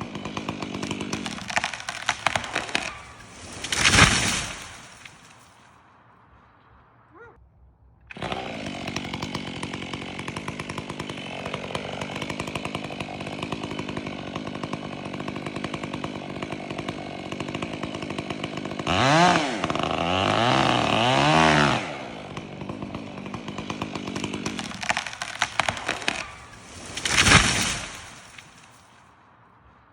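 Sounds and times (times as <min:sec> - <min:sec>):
chainsaw starting and revving: 0:00.0 - 0:05.4, 0:08.1 - 0:29.0.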